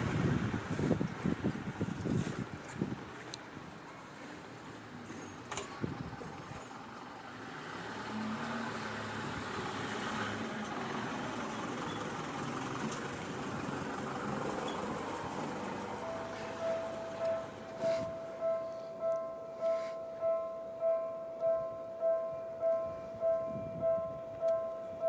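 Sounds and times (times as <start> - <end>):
road traffic noise: 0.0 - 25.0
level-crossing warning bell: 14.1 - 25.0.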